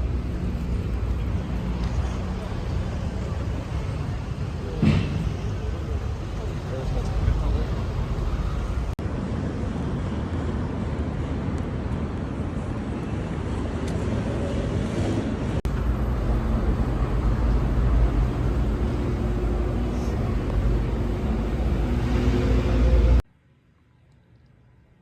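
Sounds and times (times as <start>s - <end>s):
moving vehicle rumble: 0.0s - 9.0s, 14.4s - 23.2s.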